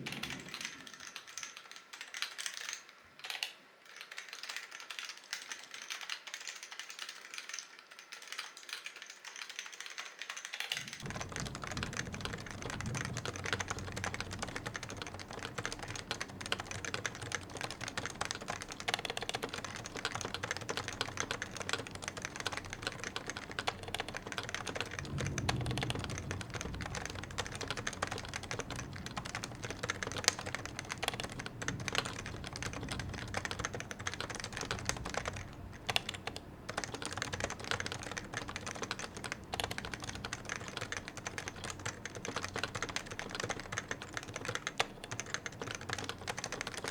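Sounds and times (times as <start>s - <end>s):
fast keyboard typing: 0.0s - 46.9s
low rumble: 19.7s - 36.0s.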